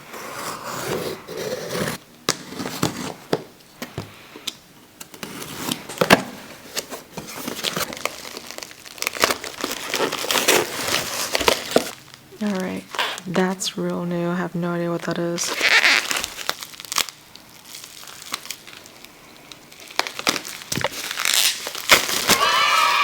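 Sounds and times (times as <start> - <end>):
packaging crinkling and tearing: 5.2 - 13.6, 15.4 - 22.5.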